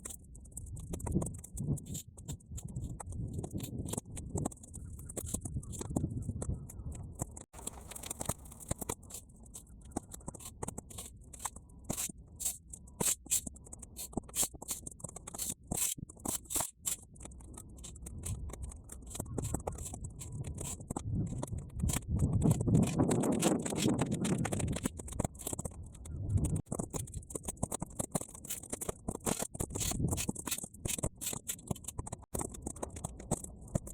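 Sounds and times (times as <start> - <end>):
wind rumbling on microphone: 0.0 - 9.2, 17.4 - 28.2, 28.8 - 33.9
bonfire crackling: 7.6 - 8.9.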